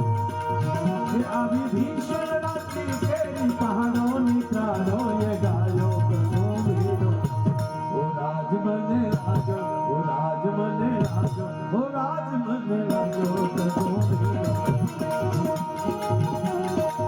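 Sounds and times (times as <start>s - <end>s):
percussion strokes: 0.0s - 8.0s, 12.9s - 17.0s
sliding folk melody: 0.0s - 17.0s.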